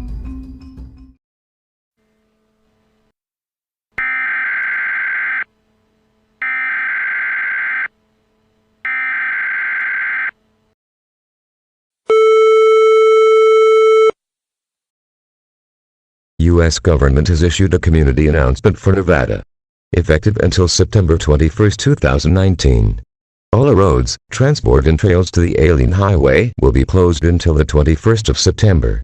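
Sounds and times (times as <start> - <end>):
warbling data tones: 4.0 - 5.4
steady attention tone: 4.0 - 10.4.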